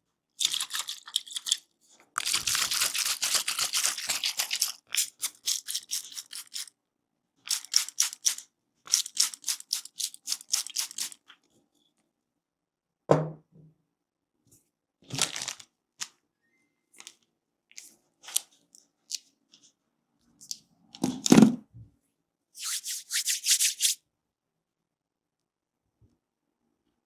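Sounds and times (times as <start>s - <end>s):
hands crackling through hair: 22.6s - 24.0s.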